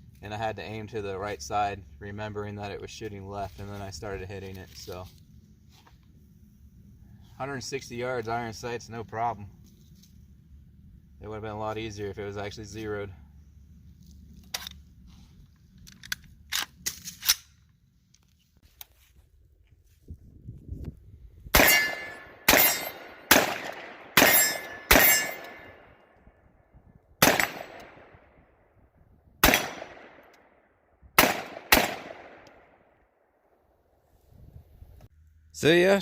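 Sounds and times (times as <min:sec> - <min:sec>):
rifle shots with echo: 0:21.5 - 0:25.9, 0:27.2 - 0:28.3, 0:29.4 - 0:33.0.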